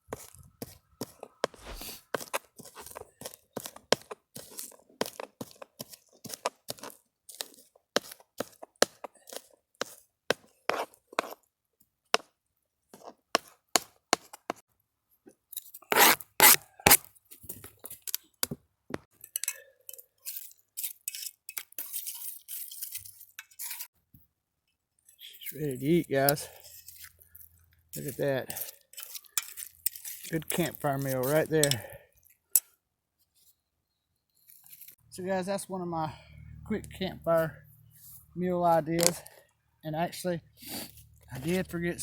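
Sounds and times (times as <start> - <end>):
metal utensil scraping cooking pot: 25.1 - 32.0.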